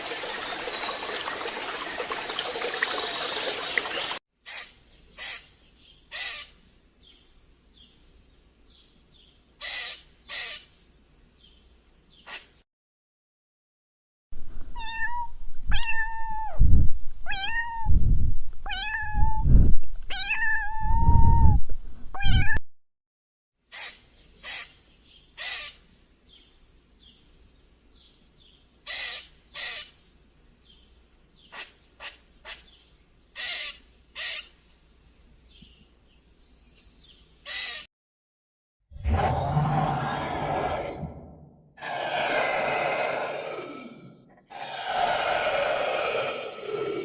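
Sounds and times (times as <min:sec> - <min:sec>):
cat meowing: 0:14.8 - 0:16.6, 0:17.3 - 0:17.9, 0:18.6 - 0:19.4, 0:20.1 - 0:21.4, 0:22.2 - 0:22.6
breathy noise bursts: 0:39.0 - 0:47.0.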